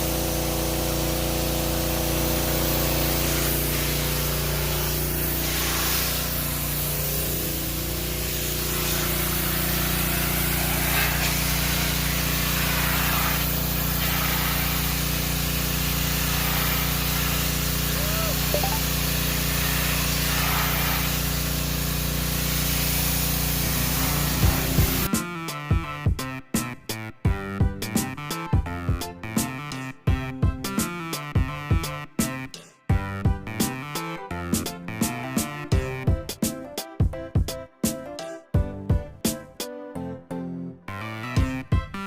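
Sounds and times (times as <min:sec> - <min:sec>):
pressure washer motor hum: 0:00.0 - 0:25.1
water jet hissing: 0:00.0 - 0:25.1.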